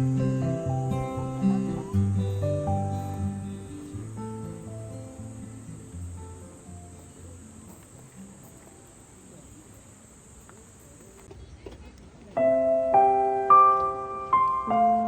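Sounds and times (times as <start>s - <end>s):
piano music: 0.0s - 8.4s, 12.4s - 15.0s
high insect-like drone: 0.0s - 11.2s.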